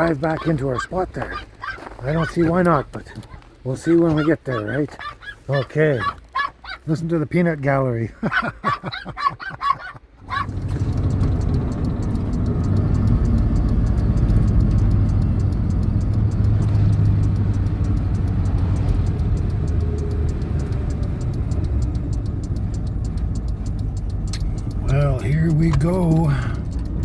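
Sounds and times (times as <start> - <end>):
pitched voice-like calls: 0.0 - 6.9
car engine and tyre rumble: 0.0 - 27.0.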